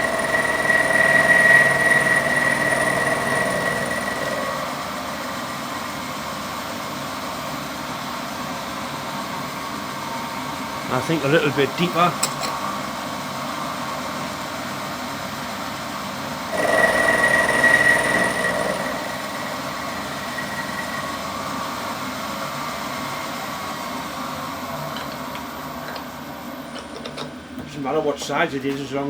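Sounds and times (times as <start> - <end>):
machine running: 0.0 - 6.5, 16.5 - 22.1
cutter cutting metal with whine: 0.0 - 6.7, 16.5 - 23.8.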